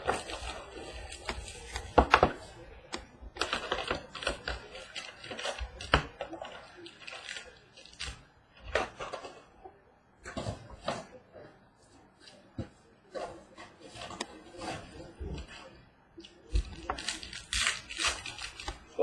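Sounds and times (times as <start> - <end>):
packaging clicks taps and crinkles: 0.0 - 9.5, 16.2 - 19.0.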